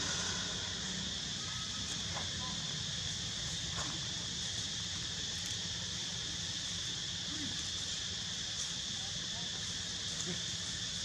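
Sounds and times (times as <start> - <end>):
insect chorus buzzing: 0.0 - 11.0.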